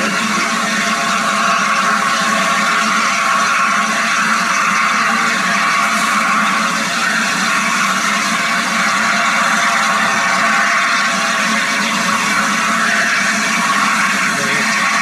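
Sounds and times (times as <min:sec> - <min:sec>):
steam locomotive hissing: 0:00.0 - 0:15.0.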